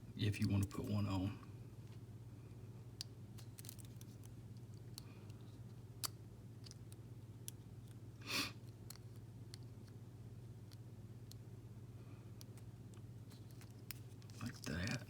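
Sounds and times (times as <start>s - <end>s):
steady low hum: 0.0s - 15.0s
small clicks of cable handling: 3.0s - 8.0s, 12.4s - 15.0s.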